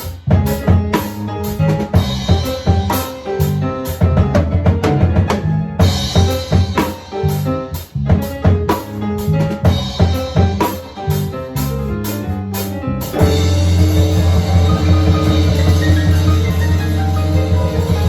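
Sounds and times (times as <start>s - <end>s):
drum kit playing: 0.0s - 18.0s
instrumental melody and bass line: 0.0s - 18.0s
low held chord: 13.2s - 18.0s.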